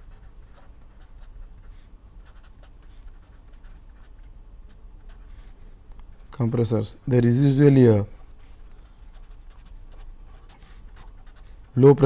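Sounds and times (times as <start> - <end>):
pen scratching on paper: 0.0 - 4.2, 8.2 - 11.8
low background hum: 0.0 - 12.0.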